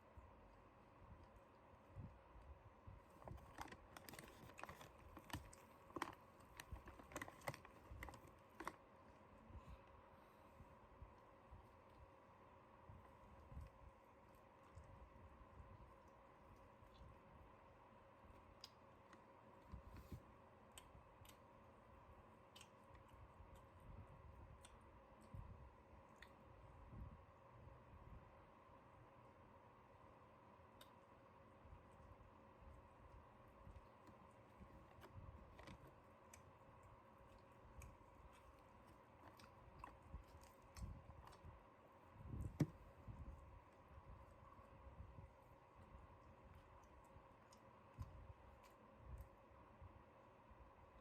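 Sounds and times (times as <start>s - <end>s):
faint steady hum: 0.0s - 51.0s
person chewing: 34.2s - 41.6s.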